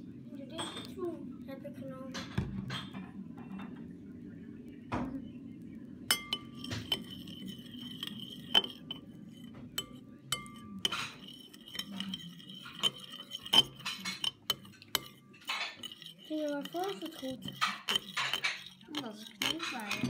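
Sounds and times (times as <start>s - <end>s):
utensil clinking against bowl: 6.1s - 20.0s
utensil stirring slime: 6.1s - 20.0s.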